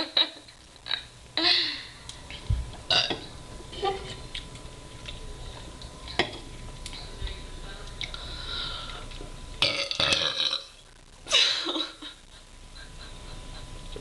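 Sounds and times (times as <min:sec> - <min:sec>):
person burping: 0:02.9 - 0:03.2, 0:09.6 - 0:10.8.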